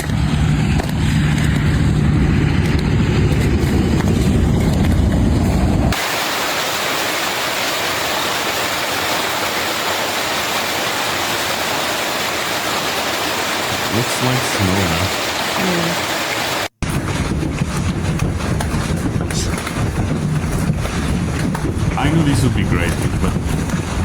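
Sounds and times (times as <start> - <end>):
heavy low rumble with hum: 0.0 - 6.0, 16.8 - 24.0
hailstorm pouring down: 3.9 - 24.0.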